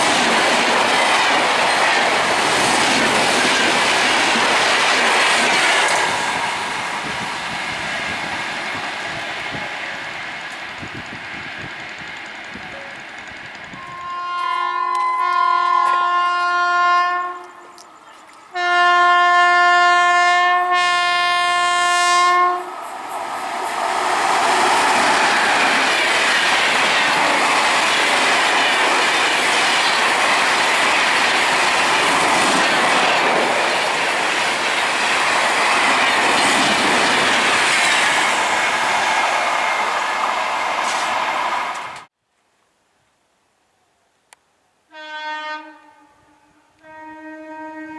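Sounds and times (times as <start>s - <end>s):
wheels clacking over rail joints: 0.0s - 14.3s, 22.9s - 42.1s
train passing rush: 0.0s - 42.1s
multi-tone train horn: 13.7s - 17.8s, 18.5s - 22.9s, 44.9s - 47.9s.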